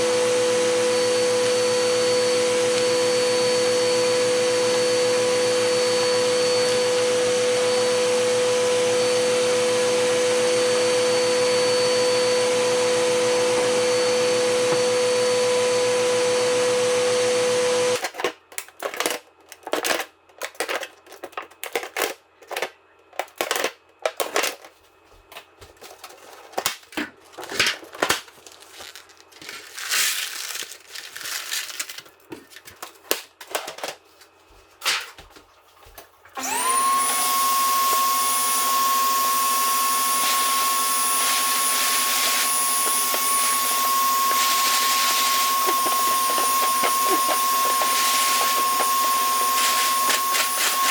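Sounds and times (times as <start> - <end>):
vacuum cleaner whining: 0.0 - 18.0, 36.4 - 50.9
rustling: 27.2 - 33.0.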